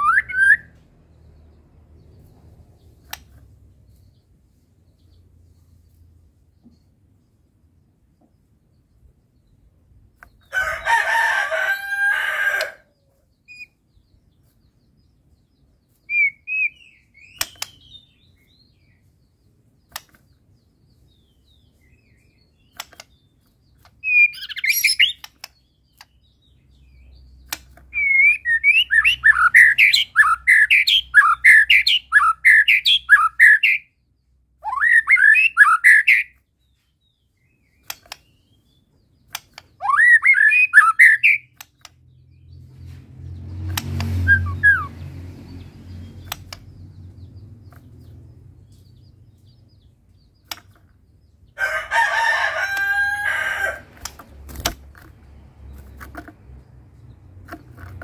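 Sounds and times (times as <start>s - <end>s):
songbird singing: 0.0s - 58.0s
sharp clicks: 2.3s - 3.5s, 17.1s - 18.0s, 19.8s - 20.4s, 22.6s - 31.4s, 37.7s - 38.5s, 39.1s - 42.2s, 43.5s - 44.5s, 45.9s - 49.1s, 50.1s - 51.4s, 53.8s - 58.0s.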